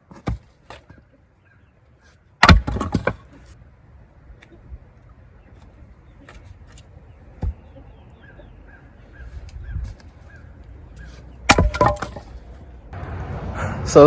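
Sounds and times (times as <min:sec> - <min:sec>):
maul striking a log: 0:00.0 - 0:01.0, 0:02.4 - 0:03.3, 0:11.4 - 0:12.5
wood cracking as it splits: 0:02.4 - 0:03.3, 0:11.5 - 0:12.5.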